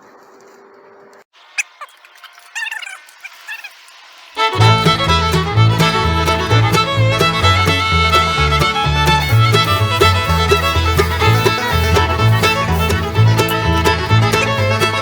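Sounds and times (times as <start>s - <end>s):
fiddle: 4.4s - 15.0s
bouncing bass line: 4.5s - 15.0s.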